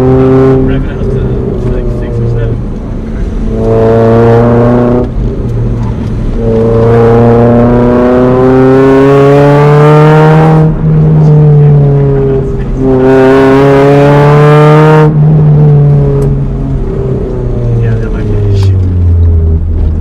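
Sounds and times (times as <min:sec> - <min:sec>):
car engine accelerating: 0:00.0 - 0:20.0.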